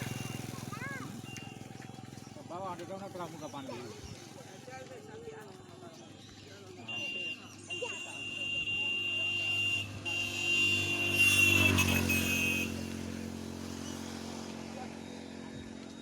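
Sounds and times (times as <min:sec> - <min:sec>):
motorcycle engine passing by: 0:00.0 - 0:04.7, 0:09.2 - 0:16.0.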